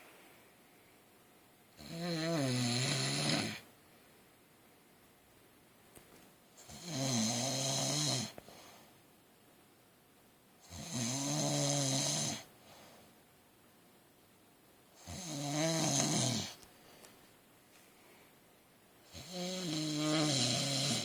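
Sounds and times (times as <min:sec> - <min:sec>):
man snoring: 0:01.8 - 0:03.6, 0:06.6 - 0:08.4, 0:10.6 - 0:12.5, 0:15.0 - 0:16.6, 0:19.1 - 0:21.0.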